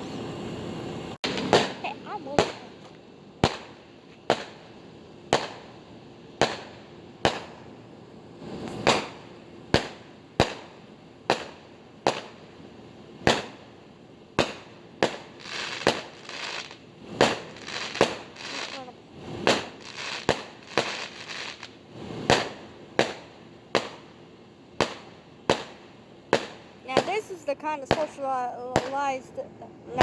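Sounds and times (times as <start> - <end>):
crackling firework pops: 1.2 - 4.7, 5.3 - 5.7, 6.4 - 7.7, 8.6 - 12.5, 13.2 - 13.7, 14.4 - 24.2, 24.8 - 29.1
fireworks bangs: 1.2 - 5.8, 6.4 - 7.8, 8.4 - 12.5, 13.2 - 13.8, 14.4 - 24.2, 24.8 - 30.0.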